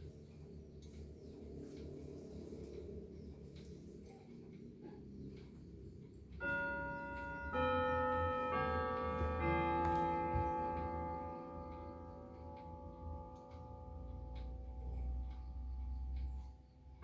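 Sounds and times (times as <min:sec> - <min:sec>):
clock ticking softly: 0:00.1 - 0:17.0
clock chiming: 0:05.2 - 0:17.0.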